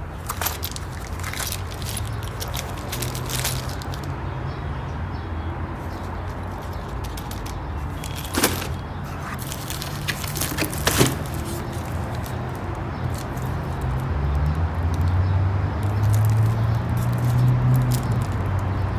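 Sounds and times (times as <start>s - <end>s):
small handling clicks: 0.2s - 4.1s, 5.8s - 13.6s.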